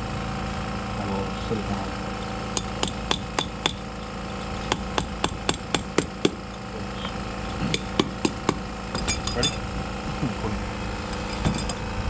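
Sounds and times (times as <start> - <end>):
hammer strikes: 2.2 - 9.6, 11.3 - 11.8.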